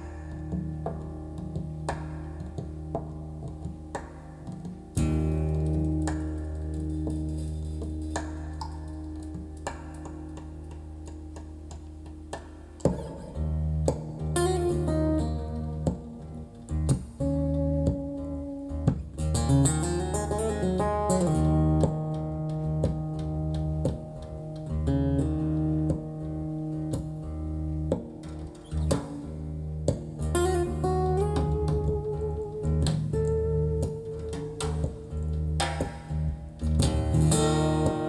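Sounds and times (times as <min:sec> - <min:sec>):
plucked guitar notes: 0:00.0 - 0:38.0.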